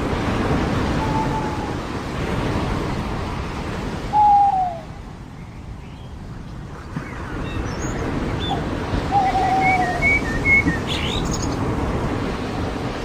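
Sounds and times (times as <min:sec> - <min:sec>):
surf washing on beach: 0:00.0 - 0:13.0
bird call gliding downward: 0:04.1 - 0:04.9, 0:08.4 - 0:11.1.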